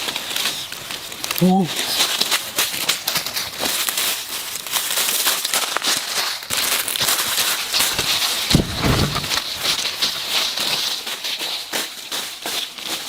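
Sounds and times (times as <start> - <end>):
ribs crackling and hissing: 0.0 - 13.0.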